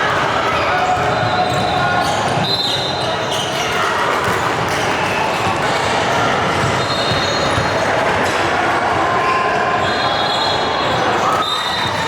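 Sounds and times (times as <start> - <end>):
court and crowd noise: 0.0 - 12.0.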